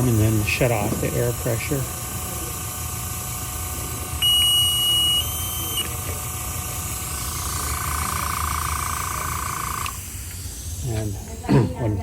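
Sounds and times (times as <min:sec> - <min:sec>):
small air pump humming: 0:00.0 - 0:12.0
high-pitched electronic beep: 0:04.2 - 0:05.9.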